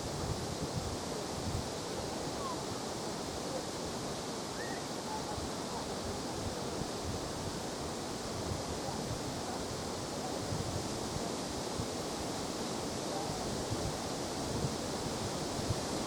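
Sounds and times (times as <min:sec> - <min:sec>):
strong wind blowing: 0:00.0 - 0:16.0
wind buffeting microphone: 0:13.2 - 0:16.0.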